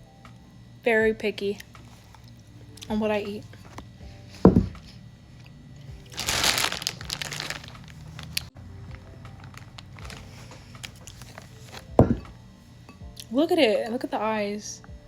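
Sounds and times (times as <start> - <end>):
crawfish shell crackling: 6.1 - 11.9.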